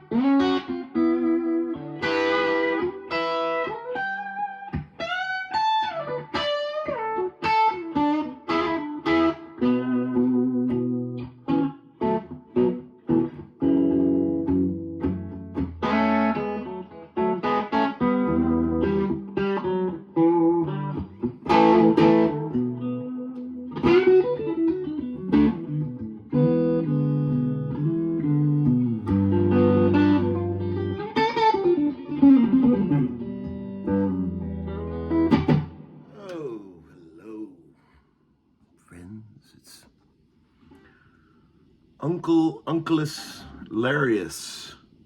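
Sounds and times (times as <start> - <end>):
electric guitar playing: 0.0 - 36.2.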